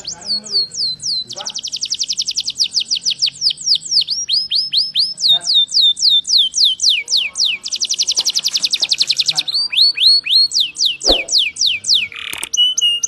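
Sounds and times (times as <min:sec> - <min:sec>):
canary singing trills: 0:00.0 - 0:13.0.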